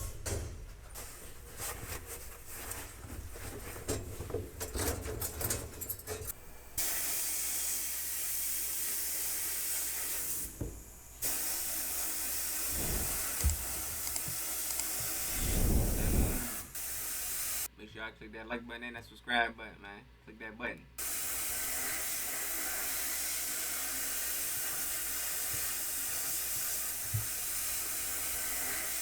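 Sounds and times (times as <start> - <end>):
compressed air hissing: 6.3 - 17.7, 21.0 - 29.0.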